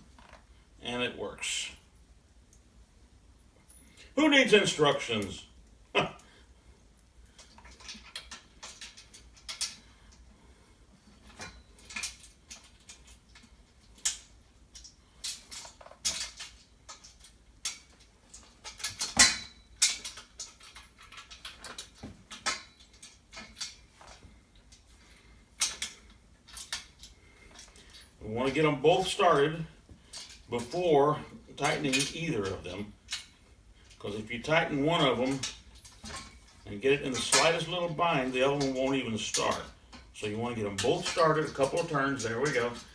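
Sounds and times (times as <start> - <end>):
metallic clicks of bolts and parts: 7.2 - 10.2, 11.0 - 24.9, 25.6 - 30.9, 31.6 - 42.9.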